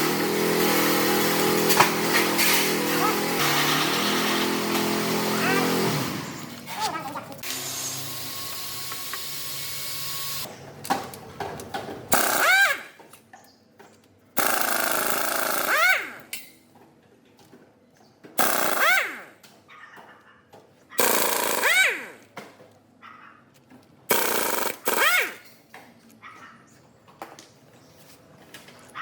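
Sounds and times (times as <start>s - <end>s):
impact wrench bursts: 0.0s - 6.8s, 7.4s - 10.5s, 12.1s - 13.0s, 14.4s - 16.4s, 18.4s - 19.4s, 21.0s - 22.3s, 24.1s - 25.5s
steady machine noise: 0.0s - 10.5s, 24.1s - 25.4s.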